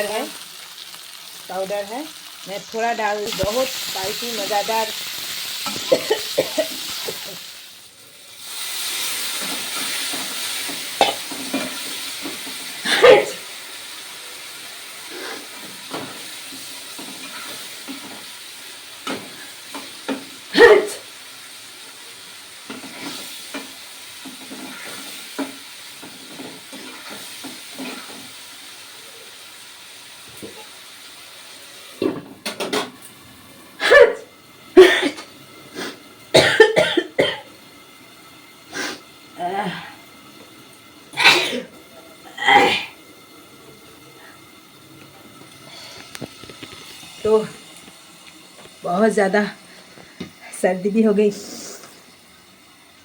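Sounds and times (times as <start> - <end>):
frying hiss: 0.0 - 53.0
paste sizzling in hot oil: 0.0 - 53.0
woman coughing: 5.8 - 7.4, 11.0 - 11.3, 12.8 - 13.4, 20.5 - 21.0, 34.8 - 35.2, 36.4 - 37.4, 41.2 - 41.7.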